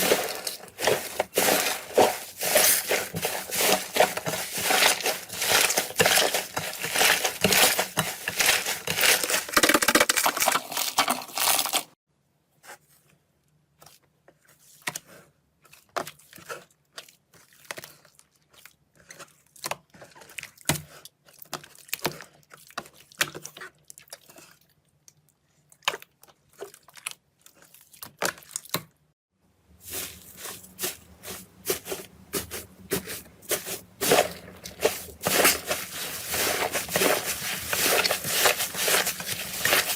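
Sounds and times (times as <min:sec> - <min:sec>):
slime crackling and crunching: 0:00.0 - 0:12.0, 0:29.9 - 0:39.9.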